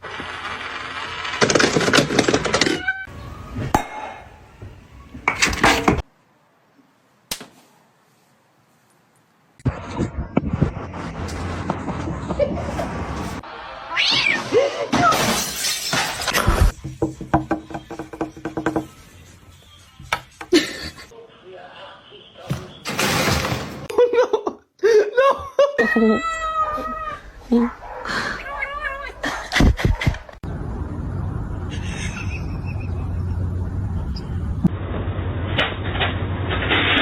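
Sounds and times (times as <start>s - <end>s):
cats meowing: 2.6s - 3.7s, 13.9s - 14.5s, 25.8s - 29.5s.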